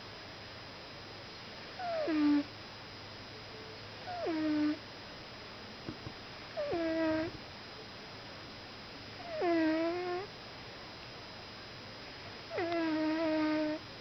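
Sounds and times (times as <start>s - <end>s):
cat snoring squeaks: 1.8s - 2.5s, 4.0s - 4.8s, 6.6s - 7.3s, 9.2s - 10.3s, 12.5s - 13.8s.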